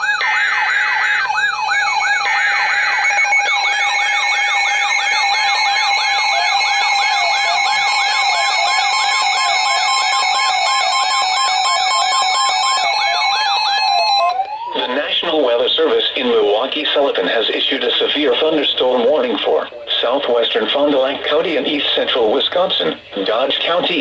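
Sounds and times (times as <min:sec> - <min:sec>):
warning alarm tone: 0:00.0 - 0:15.6
yelping siren: 0:00.0 - 0:16.0.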